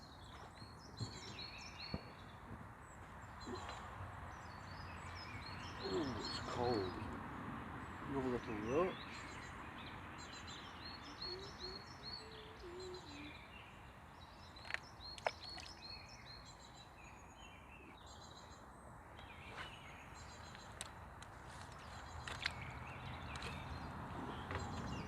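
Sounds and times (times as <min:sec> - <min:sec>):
low outdoor background: 0:00.0 - 0:25.0
small birds chirping: 0:00.0 - 0:25.0.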